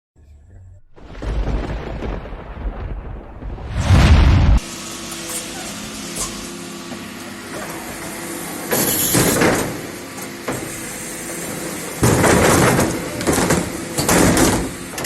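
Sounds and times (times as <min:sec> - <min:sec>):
collection truck running: 0:04.6 - 0:15.0
waste clattering and banging: 0:08.7 - 0:15.0.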